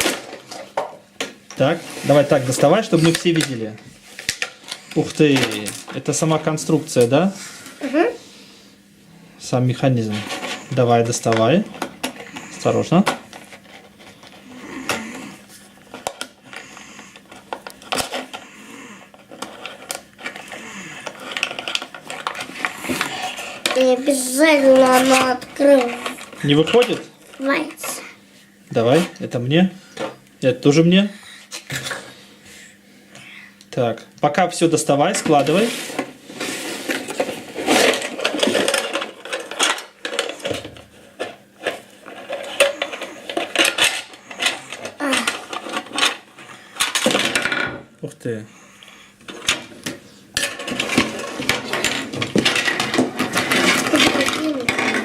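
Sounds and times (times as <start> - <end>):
hard plastic pieces clattering: 4.2 - 6.4, 36.4 - 47.8, 49.3 - 55.0.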